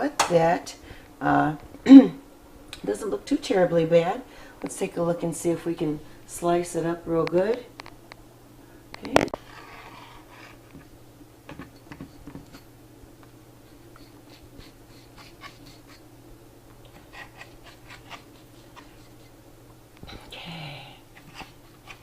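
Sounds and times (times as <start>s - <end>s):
faint steady hum: 0.0s - 22.0s
knife scraping cookie in pan: 9.4s - 10.8s, 11.5s - 12.7s, 13.6s - 16.1s, 16.8s - 19.4s.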